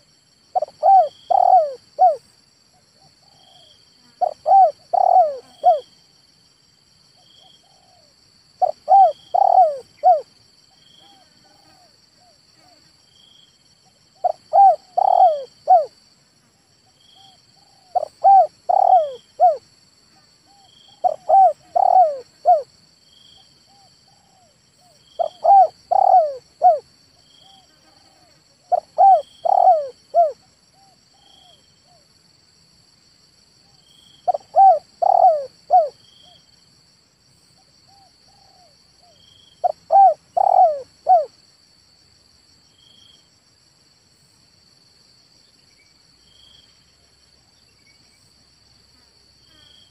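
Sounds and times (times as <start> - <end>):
high insect drone: 0.0 - 49.9
dove cooing: 0.5 - 2.2, 4.2 - 5.9, 7.5 - 10.3, 14.2 - 16.0, 17.2 - 19.6, 20.5 - 22.7, 23.7 - 26.9, 27.5 - 31.0, 34.2 - 36.0, 37.9 - 41.3.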